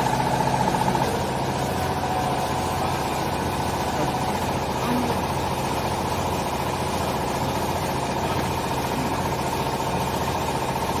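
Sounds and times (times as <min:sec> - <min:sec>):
baler machine motor humming: 0:00.0 - 0:11.0.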